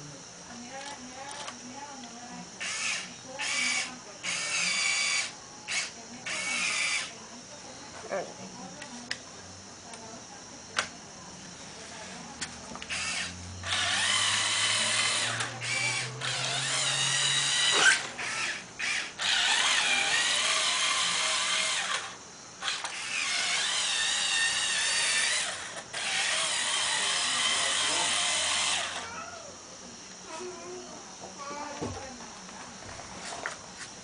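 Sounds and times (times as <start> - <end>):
toy truck motors whirring: 0.7 - 7.2, 11.8 - 29.3.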